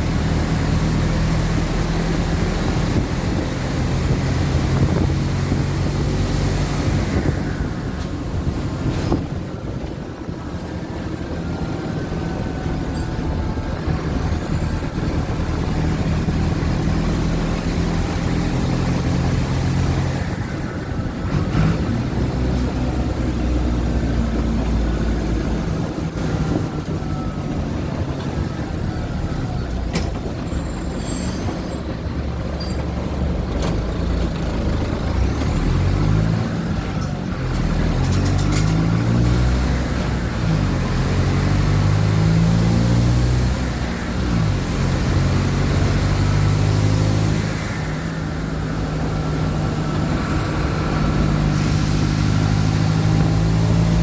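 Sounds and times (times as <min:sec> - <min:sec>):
bus diesel engine: 0:00.0 - 0:54.0
air hiss: 0:51.5 - 0:52.9.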